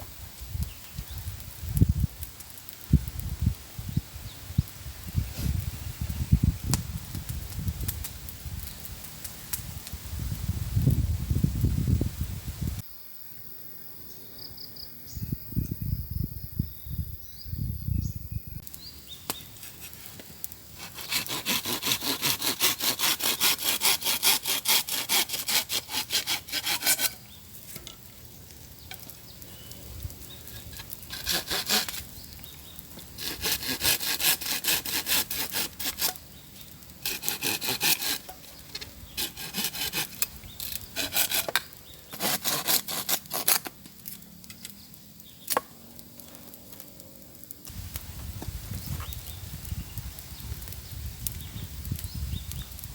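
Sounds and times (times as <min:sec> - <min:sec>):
hand saw cutting wood: 0:20.8 - 0:27.2, 0:30.5 - 0:32.0, 0:33.2 - 0:36.2, 0:37.0 - 0:38.4, 0:39.2 - 0:43.7.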